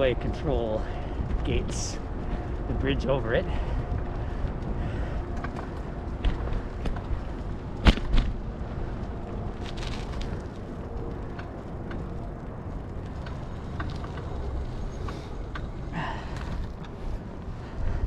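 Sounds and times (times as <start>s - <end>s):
bicycle tyres on road: 0.0s - 18.0s.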